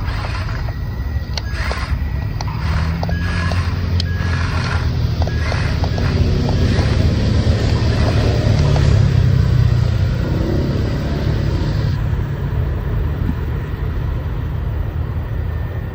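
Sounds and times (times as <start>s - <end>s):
low engine rumble: 0.0s - 15.9s.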